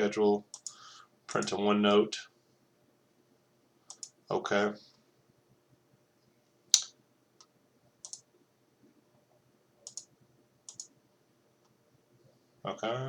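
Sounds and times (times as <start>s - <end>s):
computer mouse clicking: 0.5s - 0.8s, 3.9s - 4.2s, 6.8s - 8.3s, 9.8s - 10.1s, 10.7s - 10.9s.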